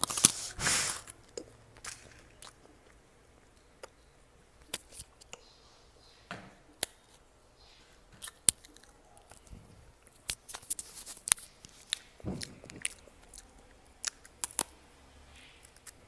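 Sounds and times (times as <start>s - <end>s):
chewing crunchy snack: 8.2s - 14.8s.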